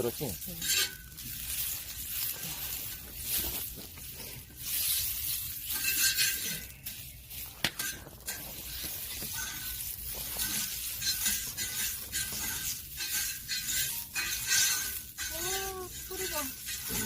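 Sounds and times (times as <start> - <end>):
cloth rubbing on a griddle: 0.0 - 17.0.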